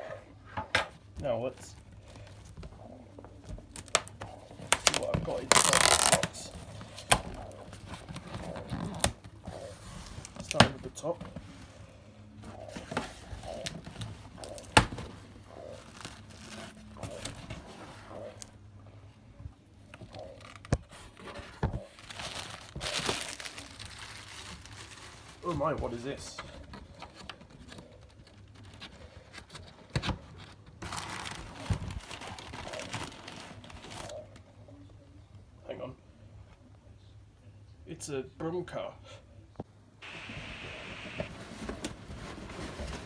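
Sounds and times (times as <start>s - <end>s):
packaging crinkling and tearing: 2.0s - 11.0s, 12.5s - 18.5s, 20.0s - 34.4s.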